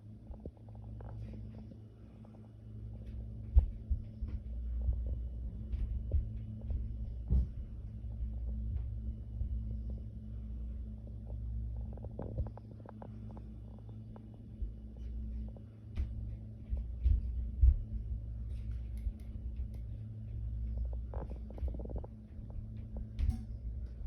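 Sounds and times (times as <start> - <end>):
steady low hum: 0.0 - 24.0
muffled thuds through ceiling: 3.0 - 10.1, 14.6 - 24.0.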